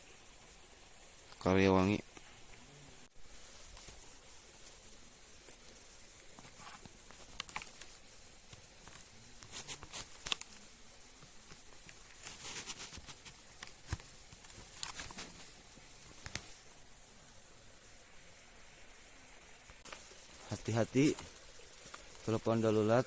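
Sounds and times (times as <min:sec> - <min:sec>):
night insects droning: 0:00.0 - 0:23.0.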